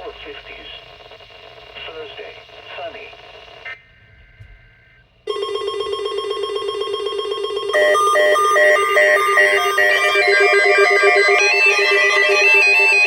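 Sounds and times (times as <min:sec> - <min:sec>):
buzzing ring-like alert tone: 0:05.3 - 0:13.0
high pulsing beeps: 0:05.3 - 0:13.0.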